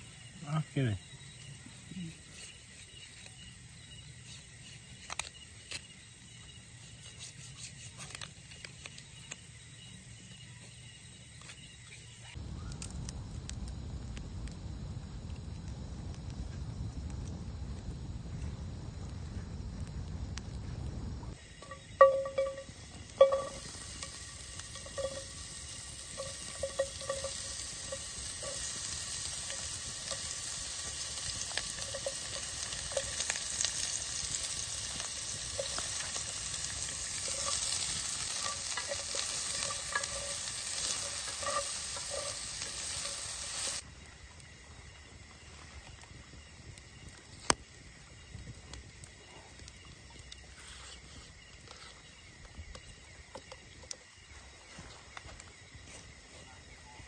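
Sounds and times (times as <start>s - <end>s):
food sizzling in a pan: 21.3s - 43.8s.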